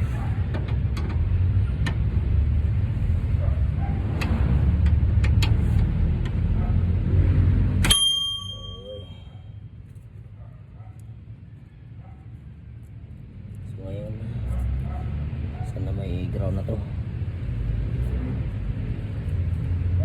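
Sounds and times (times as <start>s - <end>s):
steady low rumble: 0.0s - 20.0s
sharp metallic clink: 7.8s - 9.4s.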